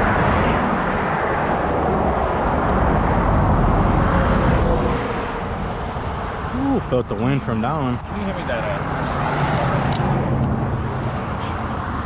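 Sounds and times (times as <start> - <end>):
vehicle driving past: 1.8 - 6.6.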